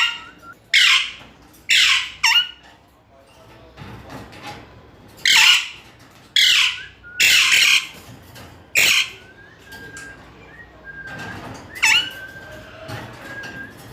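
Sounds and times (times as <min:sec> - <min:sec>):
parrot screeching: 0:00.0 - 0:02.6, 0:05.2 - 0:05.8, 0:06.4 - 0:08.0, 0:08.8 - 0:09.2, 0:11.8 - 0:12.2
parrot whistled notes: 0:11.8 - 0:12.6.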